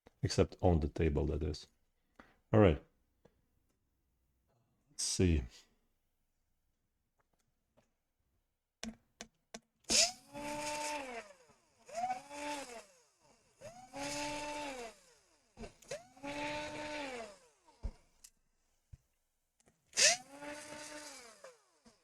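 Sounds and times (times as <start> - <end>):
electric tool motor whining: 9.9 - 18.0, 20.0 - 22.0.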